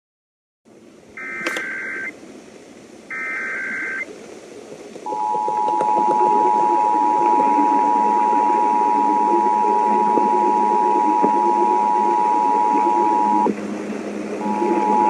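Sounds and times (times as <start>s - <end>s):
background hiss: 0.7s - 15.0s
buzzy data tones: 1.2s - 2.1s, 3.1s - 4.1s, 5.1s - 13.5s, 14.3s - 15.0s
two-tone attention signal: 1.2s - 2.1s, 3.1s - 4.0s, 5.1s - 13.5s, 14.4s - 15.0s.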